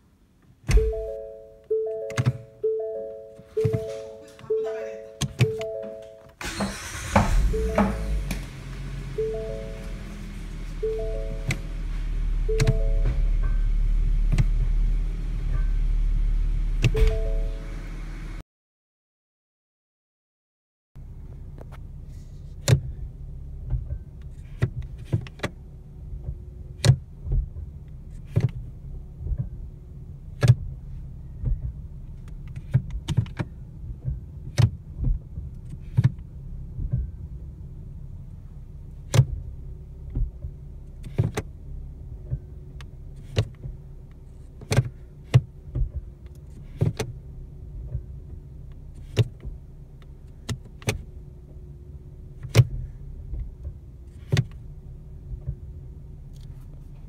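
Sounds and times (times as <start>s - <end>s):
transmission clunks: 0.4s - 18.0s, 22.6s - 37.7s, 38.8s - 57.0s
car engine idling: 6.4s - 18.4s, 21.0s - 57.0s.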